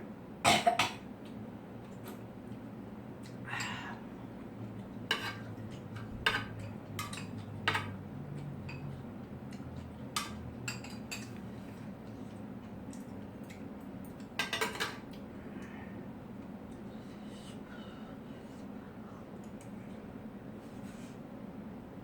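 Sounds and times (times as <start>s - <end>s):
steady low hum: 0.0s - 22.0s
cutlery clinking against dishes: 5.1s - 8.0s, 9.8s - 11.4s, 14.2s - 15.0s.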